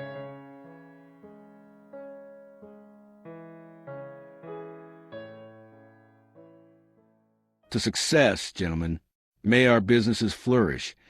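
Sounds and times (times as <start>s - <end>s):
soft piano chords: 0.0s - 7.7s.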